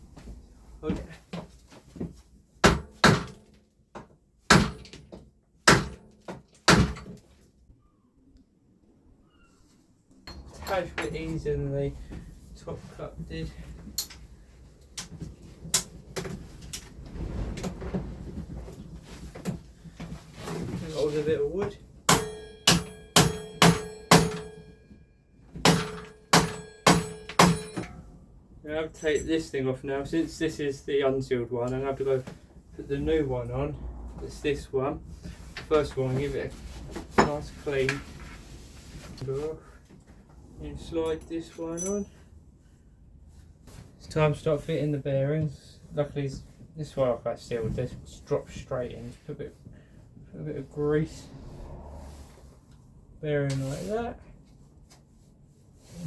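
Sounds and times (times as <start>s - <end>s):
hammer knocking on metal: 22.1s - 24.7s, 25.6s - 27.9s.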